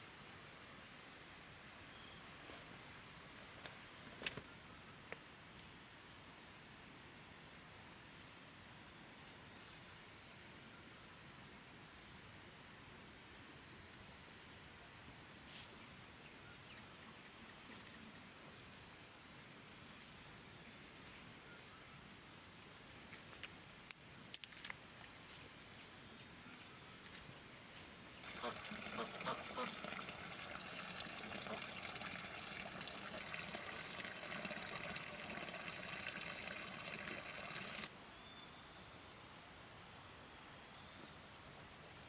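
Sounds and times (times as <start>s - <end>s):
faint outdoor ambience: 0.0s - 42.0s
insects chirring: 13.8s - 29.6s.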